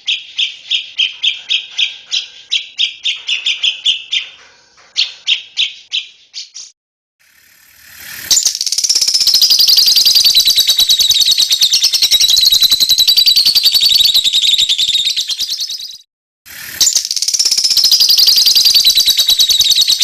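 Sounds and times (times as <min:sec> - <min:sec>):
songbird high rapid trill: 0:07.2 - 0:20.0.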